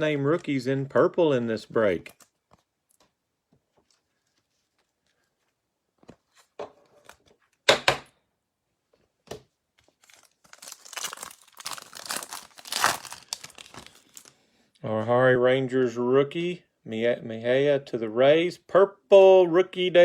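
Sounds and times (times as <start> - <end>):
card pack wrapper tearing and crinkling: 9.9 - 14.3.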